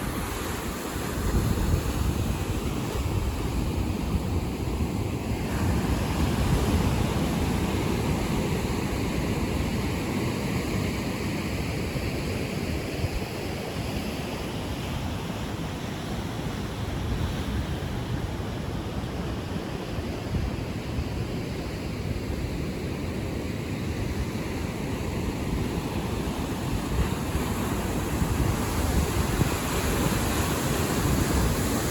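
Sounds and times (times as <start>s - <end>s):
ocean surf breaking: 0.0s - 12.8s, 23.5s - 31.9s.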